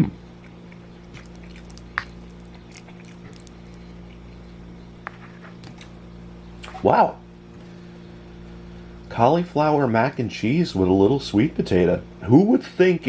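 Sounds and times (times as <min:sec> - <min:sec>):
person chewing food: 0:00.0 - 0:06.0
steady low hum: 0:00.0 - 0:13.0.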